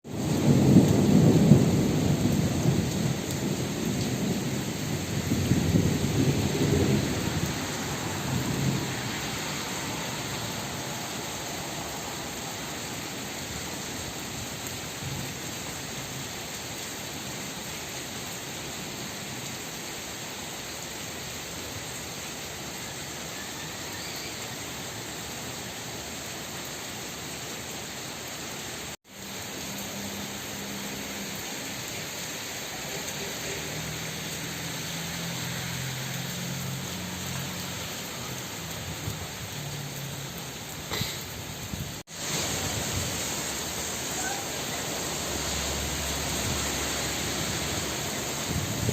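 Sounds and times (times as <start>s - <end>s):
heavy rain hissing: 0.0s - 48.9s
thunder rumble: 0.1s - 12.5s, 41.6s - 48.9s.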